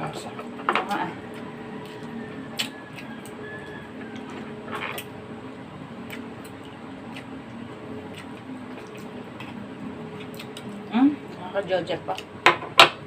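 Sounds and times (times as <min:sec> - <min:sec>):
low hum: 0:00.0 - 0:12.5
chewing and utensil clicks: 0:00.8 - 0:05.1, 0:06.0 - 0:10.9.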